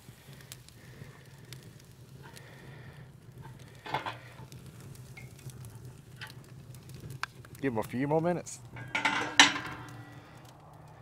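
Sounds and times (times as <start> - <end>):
fat sizzling over charcoal: 0.0 - 11.0
low steady hum: 8.6 - 10.6.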